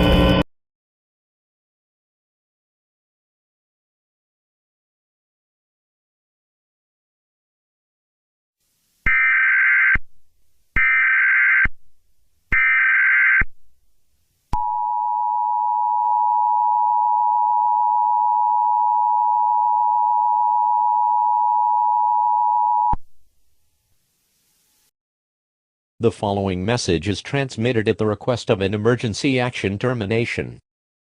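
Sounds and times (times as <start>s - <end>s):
shrill two-tone alert signal: 9.1s - 10.0s.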